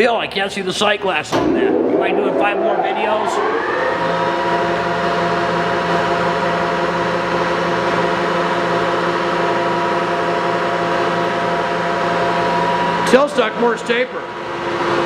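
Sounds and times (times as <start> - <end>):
lathe mechanical whine: 1.4 - 5.8.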